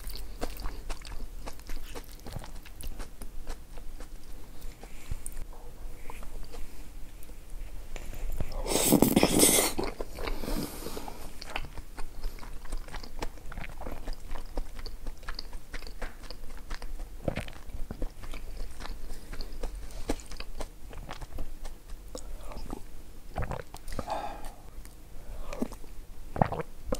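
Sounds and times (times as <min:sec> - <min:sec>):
chewing and biting: 0:00.0 - 0:05.4, 0:11.2 - 0:22.8
wet mouth clicks: 0:23.4 - 0:25.8, 0:26.4 - 0:26.7.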